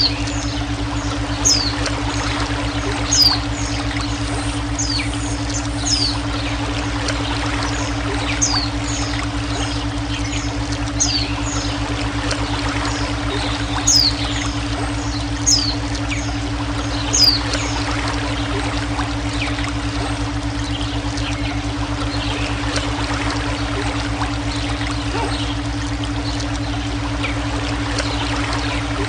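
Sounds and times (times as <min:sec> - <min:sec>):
bird chirping: 0:00.0 - 0:01.8, 0:03.0 - 0:06.5, 0:13.4 - 0:14.4, 0:15.1 - 0:16.3, 0:16.9 - 0:17.8
low pulsing hum: 0:00.0 - 0:29.0
running water hissing: 0:01.4 - 0:06.9.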